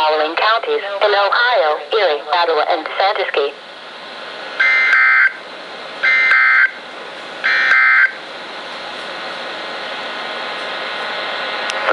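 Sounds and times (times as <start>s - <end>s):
radio hiss: 0.0s - 3.6s, 10.7s - 11.9s
shrill two-tone digital bursts: 4.6s - 5.4s, 6.0s - 6.8s.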